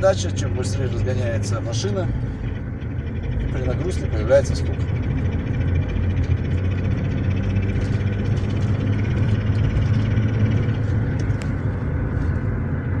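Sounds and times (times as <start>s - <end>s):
engine and road drone: 0.0s - 13.0s
gearbox rustle and knock: 6.2s - 12.5s.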